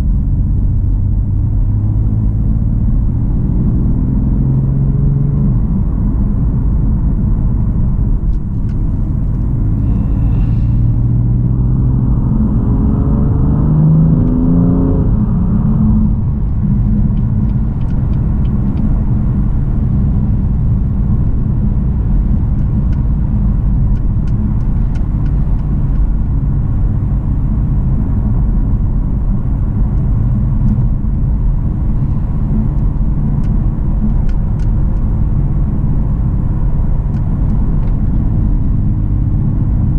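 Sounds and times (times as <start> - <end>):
road rumble: 0.0 - 39.9
car engine revving: 8.5 - 39.9.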